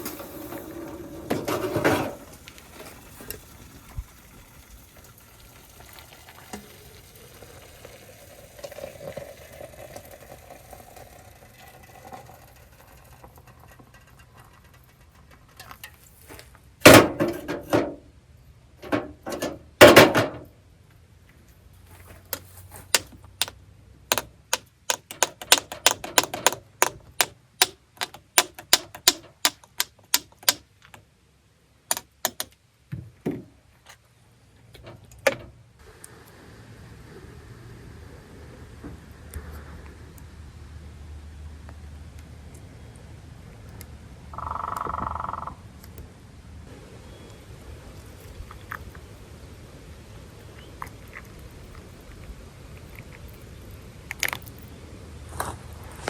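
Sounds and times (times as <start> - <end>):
sharp clicks: 24.1 - 30.6, 31.9 - 32.6
loud knocks: 24.9 - 30.6.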